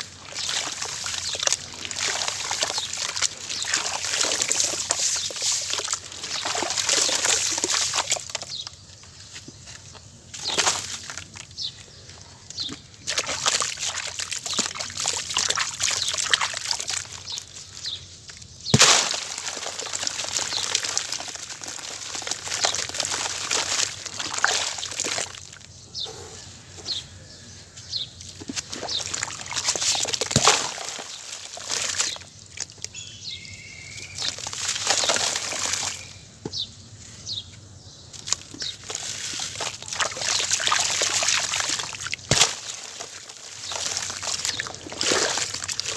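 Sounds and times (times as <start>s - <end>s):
wet crunching and sloshing: 0.0s - 36.6s, 38.1s - 45.9s
sharp crack: 18.7s - 19.7s.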